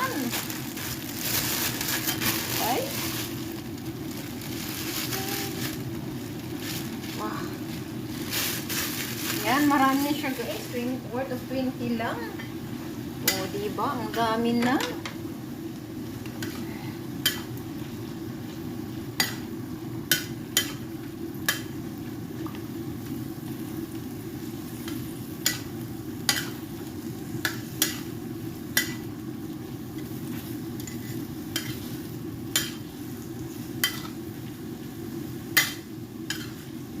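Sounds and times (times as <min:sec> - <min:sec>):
pot simmering: 0:00.0 - 0:37.0.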